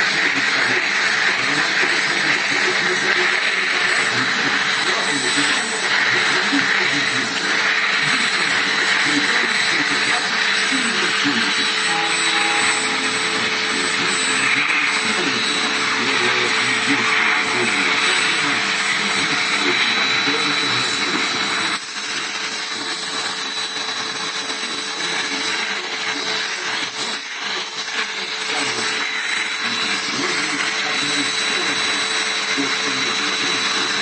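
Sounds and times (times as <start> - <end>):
vacuum cleaner running: 0.0 - 34.0.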